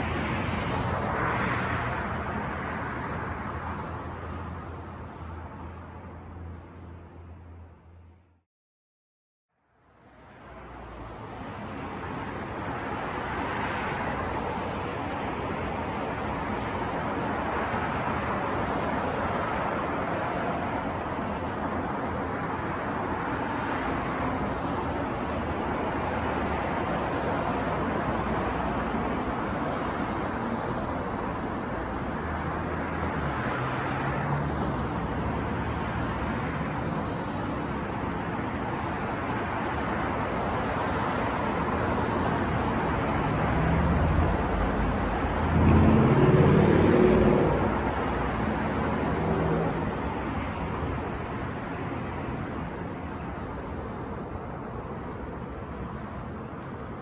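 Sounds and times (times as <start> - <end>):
city street traffic: 0.0 - 8.4, 9.5 - 57.0
vehicle engine passing: 43.2 - 50.2.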